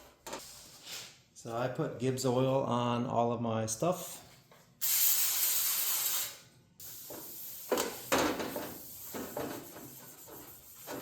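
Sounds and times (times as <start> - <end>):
aerosol can spraying: 4.8 - 11.0.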